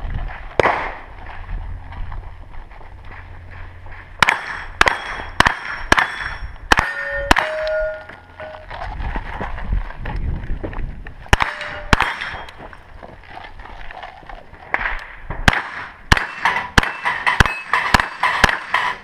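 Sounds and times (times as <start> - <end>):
carbine gunshots: 0.6 - 1.1, 4.2 - 8.0, 11.3 - 12.6, 14.7 - 19.0
steel targets ringing: 4.2 - 8.7, 11.4 - 12.6, 16.1 - 19.0.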